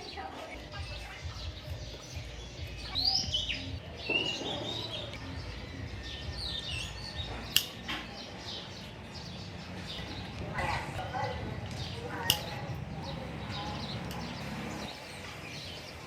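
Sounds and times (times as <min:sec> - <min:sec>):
birds chirping: 0:00.0 - 0:16.0
sharp click: 0:07.5 - 0:08.0.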